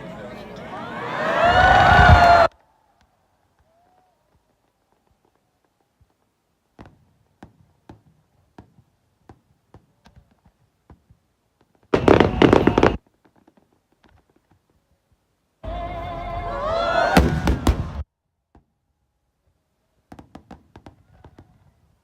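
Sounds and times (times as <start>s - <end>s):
loud firework burst: 12.0s - 13.0s, 17.2s - 18.0s
faint firework pops: 17.2s - 18.6s, 20.1s - 21.7s.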